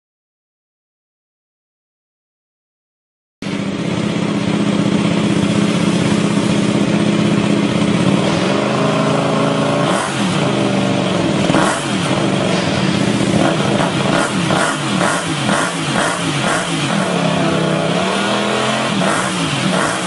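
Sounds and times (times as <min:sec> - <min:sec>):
motorcycle engine idling and revving: 0:03.4 - 0:20.0.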